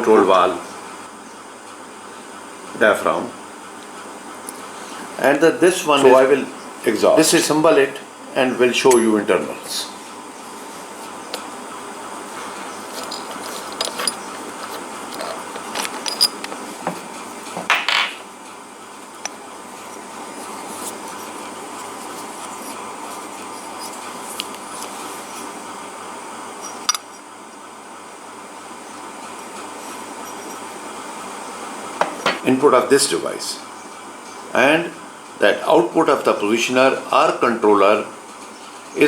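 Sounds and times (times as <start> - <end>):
room background hiss: 0.0 - 39.0
metal rattle: 12.8 - 16.7
small metal clicks and clinks: 13.0 - 16.5.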